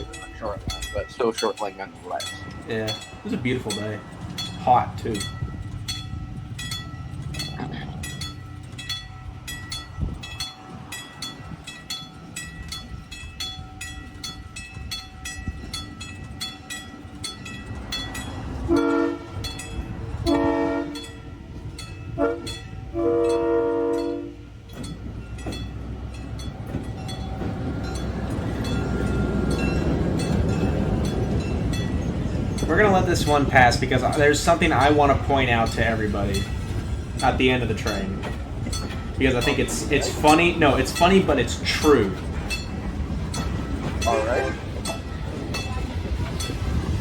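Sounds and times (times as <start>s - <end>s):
approaching train rumble: 0.0s - 47.0s
locomotive horn blasts: 18.6s - 19.6s, 20.2s - 21.5s, 22.1s - 24.5s, 44.0s - 45.0s.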